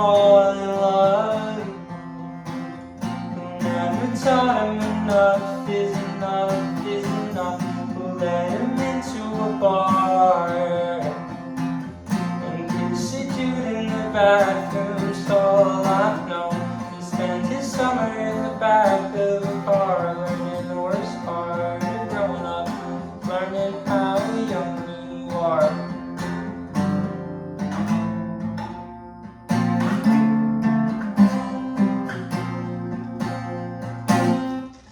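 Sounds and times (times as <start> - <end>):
person singing: 0.0 - 1.9, 3.1 - 11.3, 12.2 - 25.8
acoustic guitar strumming: 0.0 - 34.9.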